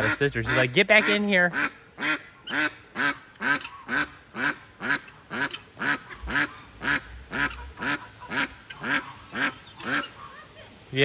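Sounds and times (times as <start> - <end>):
duck quacking loudly: 0.0 - 10.4.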